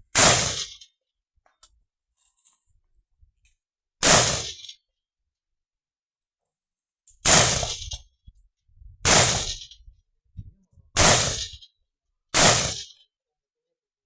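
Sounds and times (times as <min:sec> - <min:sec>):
rifle shots: 0:00.2 - 0:00.8, 0:04.0 - 0:04.6, 0:07.2 - 0:08.0, 0:09.1 - 0:09.7, 0:11.0 - 0:11.6, 0:12.4 - 0:12.9.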